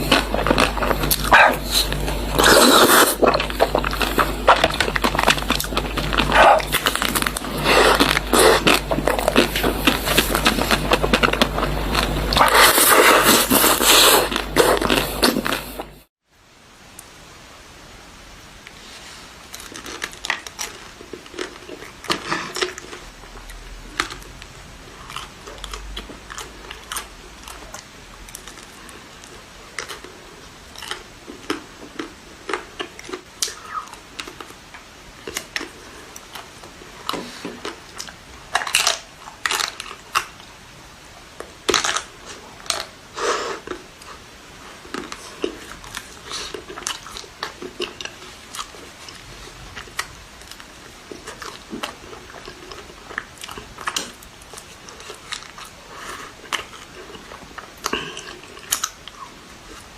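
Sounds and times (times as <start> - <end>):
crunchy bites: 0.0 - 16.0, 30.7 - 40.5, 41.4 - 43.0
person eating ice cream: 0.0 - 16.1, 41.6 - 59.9.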